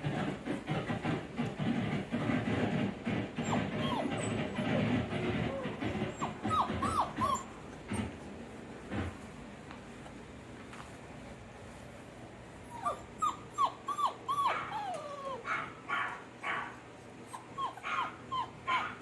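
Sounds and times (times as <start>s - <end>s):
dog yipping and whining: 3.4s - 8.1s, 12.7s - 16.1s, 17.3s - 19.0s.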